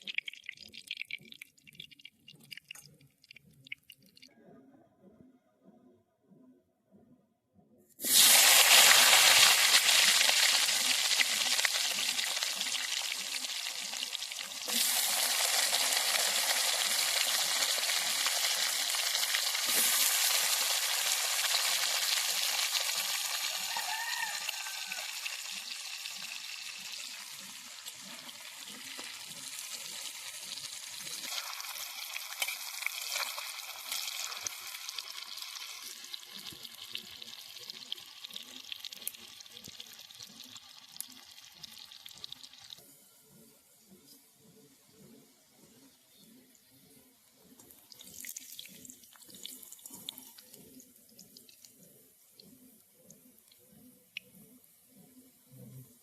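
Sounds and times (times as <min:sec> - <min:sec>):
vegetables frying in hot oil: 0:08.0 - 0:42.8.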